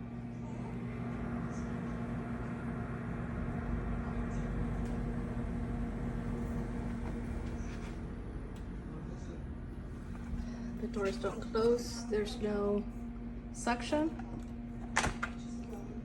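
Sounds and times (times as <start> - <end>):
refrigerator humming: 0.0 - 16.0.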